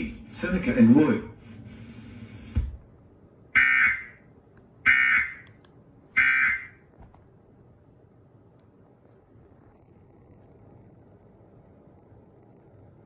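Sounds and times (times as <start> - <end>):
buzzy digital data tones: 0.0 - 2.7.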